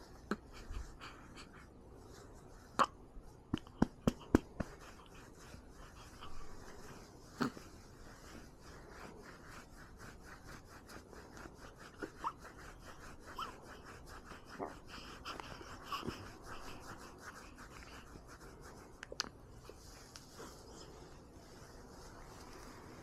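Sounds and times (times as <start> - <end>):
patting on a baby's back: 0.0 - 23.0
baby breathing softly: 11.4 - 18.1.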